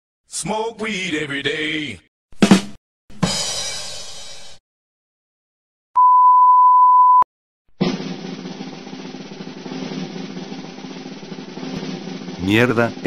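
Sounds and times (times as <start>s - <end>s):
high censor beep: 6.0s - 7.3s
snare drum roll: 7.8s - 13.0s.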